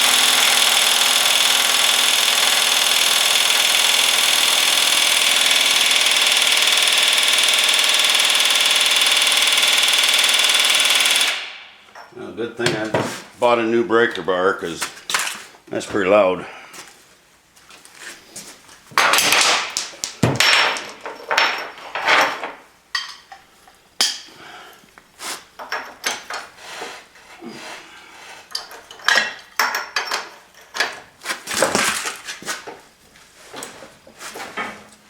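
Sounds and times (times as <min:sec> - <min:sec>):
metallic clanks and scrapes of tools: 0:28.3 - 0:31.1.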